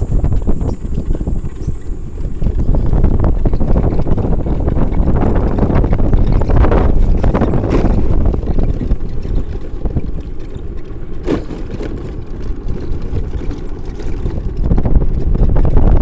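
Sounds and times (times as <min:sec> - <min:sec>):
vehicle rumble on road: 0:00.0 - 0:16.0
wind buffeting microphone: 0:00.0 - 0:16.0.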